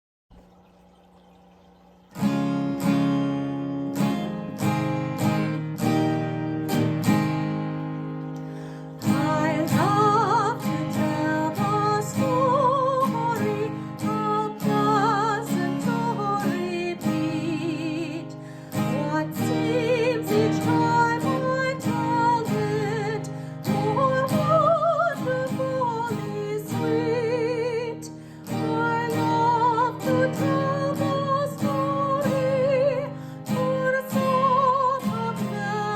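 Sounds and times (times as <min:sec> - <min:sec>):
acoustic guitar strumming chords: 0:02.1 - 0:35.9
person singing: 0:09.0 - 0:35.9.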